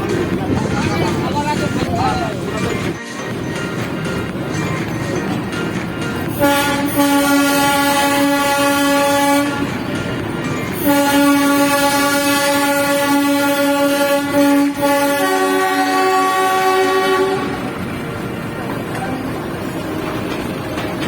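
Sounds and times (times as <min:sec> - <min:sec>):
train horn blasts: 0:06.3 - 0:09.8, 0:10.8 - 0:17.8
higher-pitched horn blast: 0:06.4 - 0:09.8, 0:10.8 - 0:17.7.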